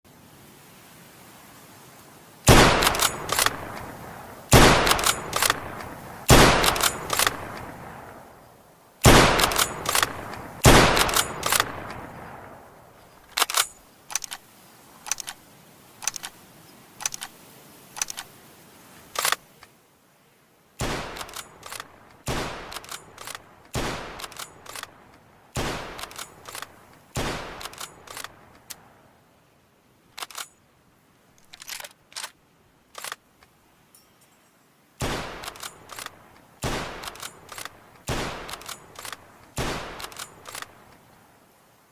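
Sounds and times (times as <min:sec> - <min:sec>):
sharp cracks and clicks: 0:02.5 - 0:07.8, 0:09.0 - 0:12.1, 0:13.3 - 0:14.4, 0:16.0 - 0:16.4, 0:19.1 - 0:19.7, 0:20.8 - 0:28.8, 0:30.1 - 0:30.6, 0:31.4 - 0:33.5, 0:35.0 - 0:41.0
rifle shots echoing: 0:02.5 - 0:08.2, 0:09.0 - 0:12.6, 0:20.8 - 0:28.4, 0:35.0 - 0:40.8.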